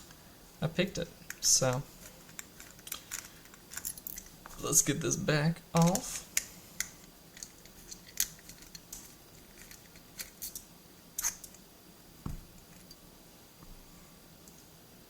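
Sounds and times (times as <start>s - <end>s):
dull knock: 12.2s - 12.5s.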